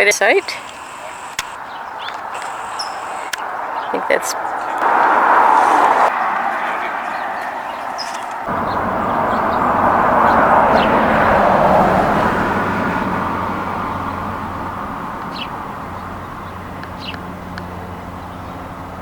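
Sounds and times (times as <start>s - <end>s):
bird chirps: 0.0s - 4.8s, 7.0s - 11.4s, 15.2s - 18.7s
road vehicle passing: 0.0s - 19.0s.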